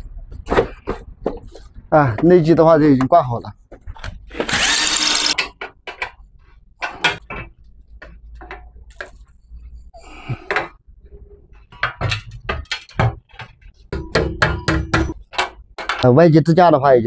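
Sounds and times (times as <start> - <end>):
metal tools clinking and knocking: 11.7 - 16.1.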